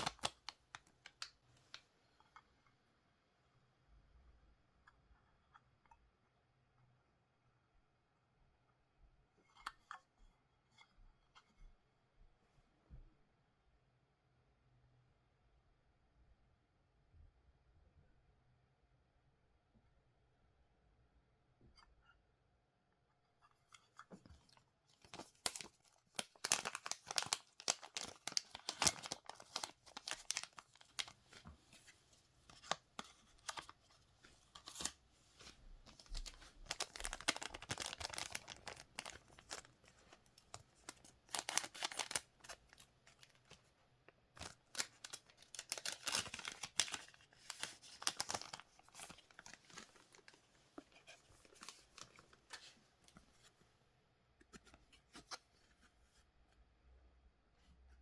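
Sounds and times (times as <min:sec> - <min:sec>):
foil wrappers tearing and crinkling: 0:00.0 - 0:00.4, 0:25.1 - 0:31.1, 0:35.9 - 0:39.7, 0:40.4 - 0:42.8, 0:44.4 - 0:50.2.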